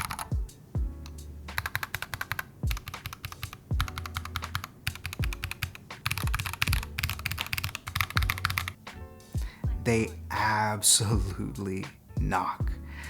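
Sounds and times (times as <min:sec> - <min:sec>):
fast typing on mechanical keyboard: 0:00.0 - 0:00.3, 0:01.6 - 0:08.8.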